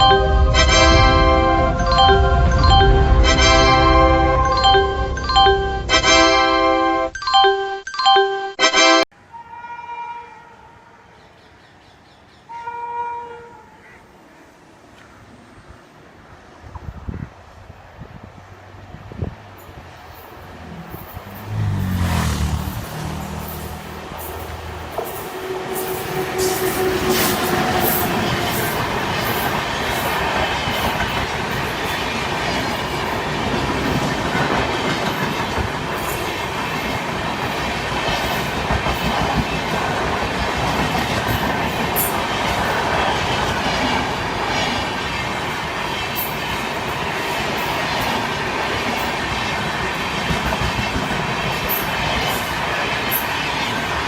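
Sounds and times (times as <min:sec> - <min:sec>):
train horn: 0:00.0 - 0:04.6, 0:08.7 - 0:11.1, 0:12.5 - 0:14.0, 0:24.9 - 0:30.1
train rushing past: 0:00.0 - 0:07.1, 0:17.4 - 0:54.0.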